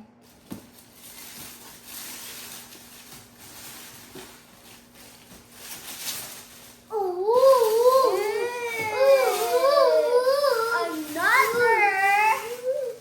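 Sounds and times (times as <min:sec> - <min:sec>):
packaging rustling and crinkling: 0:00.2 - 0:13.0.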